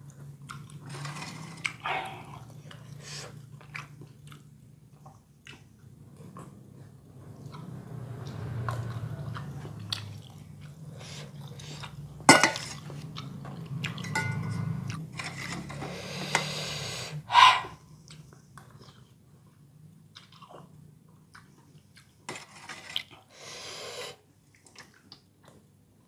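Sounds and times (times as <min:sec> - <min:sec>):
wet chewing and smacking: 0:00.0 - 0:00.9, 0:01.6 - 0:06.6, 0:07.4 - 0:12.0, 0:20.1 - 0:22.2.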